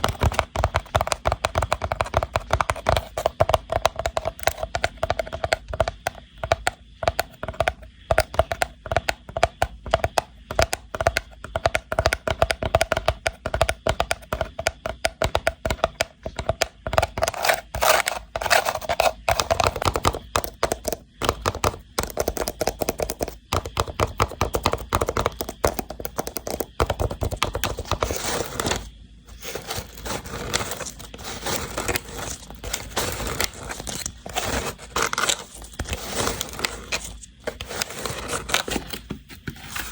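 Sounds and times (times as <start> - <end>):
fingers tapping and scratching rattan: 0.0 - 39.9.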